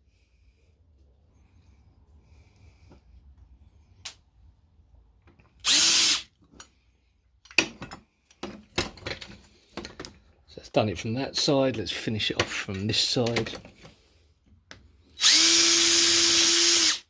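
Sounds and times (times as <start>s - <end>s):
power drill drilling: 5.6s - 6.3s, 15.2s - 17.0s
sharp clicks and knocks: 12.4s - 13.9s.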